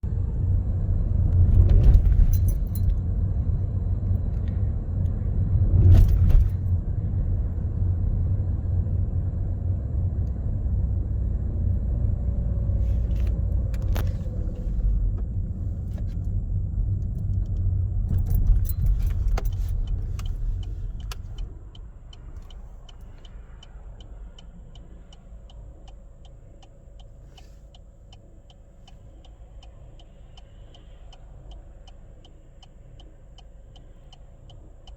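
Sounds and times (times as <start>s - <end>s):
car engine rumbling: 0.0s - 34.9s
steady ticking: 19.4s - 34.9s.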